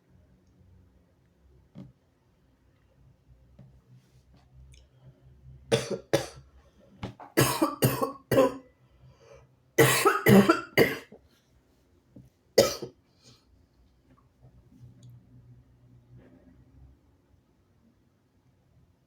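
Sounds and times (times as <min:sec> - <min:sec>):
person coughing harshly: 0:05.7 - 0:06.4, 0:07.4 - 0:08.6, 0:09.8 - 0:11.1, 0:12.6 - 0:12.9.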